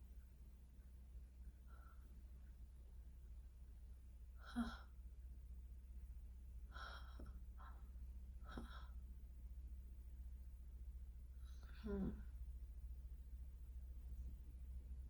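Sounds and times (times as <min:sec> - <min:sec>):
steady low hum: 0:00.0 - 0:15.0
woman breathing softly: 0:01.5 - 0:02.5, 0:06.6 - 0:09.2.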